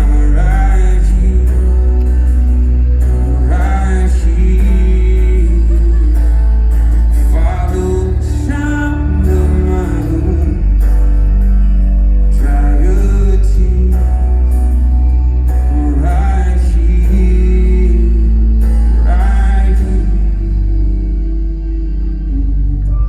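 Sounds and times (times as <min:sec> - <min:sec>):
live rock band playing: 0:00.0 - 0:21.3
heavy sustained bass: 0:00.0 - 0:23.0
wordless singing: 0:00.0 - 0:23.0.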